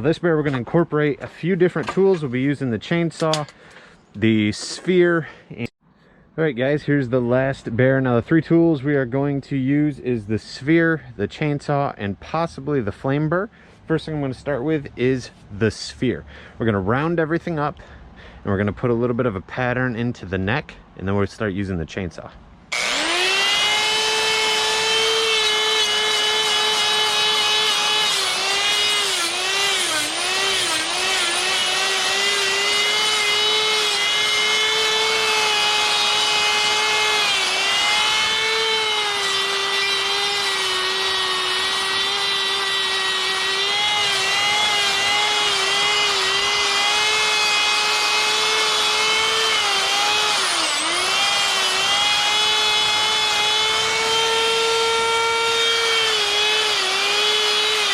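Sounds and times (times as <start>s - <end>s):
die grinder whining carving wood: 22.7s - 57.9s.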